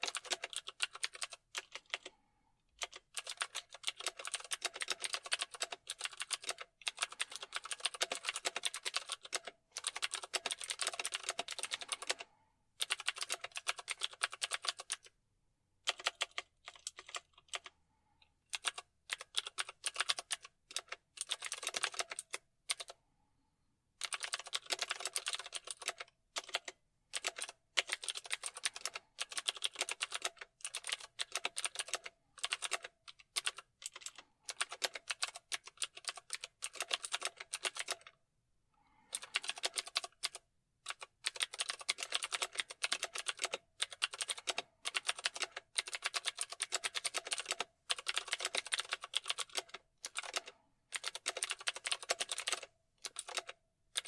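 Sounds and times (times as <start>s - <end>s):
keyboard typing clicks: 39.1s - 54.0s.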